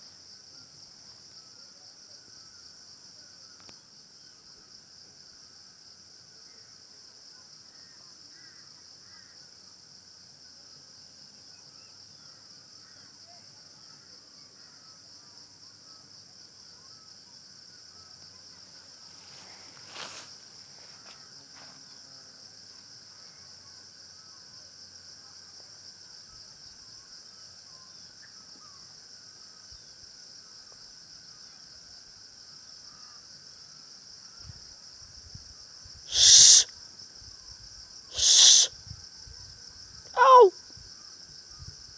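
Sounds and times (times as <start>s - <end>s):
insects droning: 0.0s - 41.9s
faint bird chirps: 36.1s - 36.7s, 38.2s - 38.7s, 40.2s - 40.5s.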